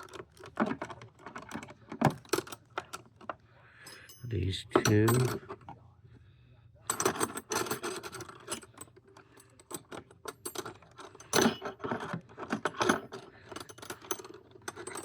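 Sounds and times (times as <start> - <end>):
metal hand tools clinking: 3.8 - 5.6.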